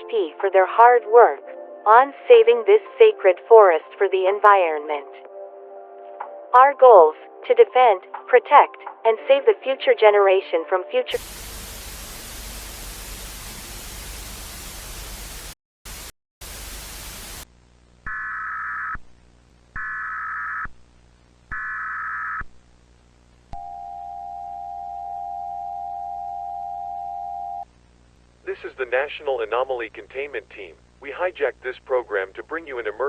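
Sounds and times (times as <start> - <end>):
television static: 11.1 - 18.0, 27.8 - 33.0.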